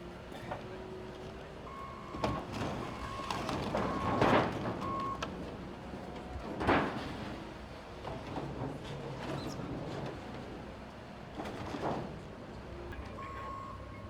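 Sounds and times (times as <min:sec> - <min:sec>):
reversing alarm beeps: 0:01.7 - 0:04.2, 0:04.8 - 0:05.2, 0:13.2 - 0:14.0.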